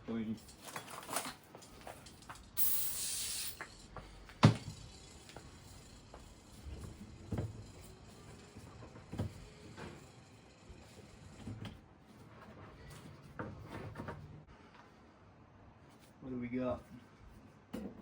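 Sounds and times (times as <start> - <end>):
knocks and handling noises: 17.6 - 18.0.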